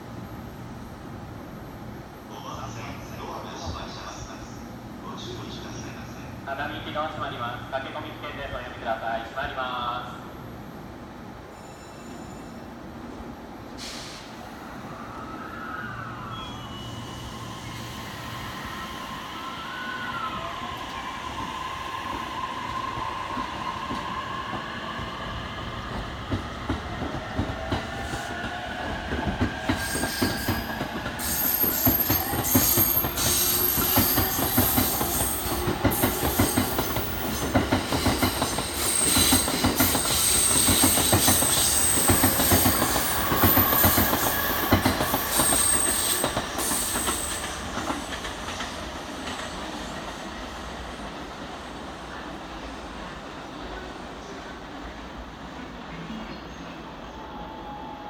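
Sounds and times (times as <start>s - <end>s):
wheel squeal: 29.7s - 37.2s, 38.7s - 47.6s.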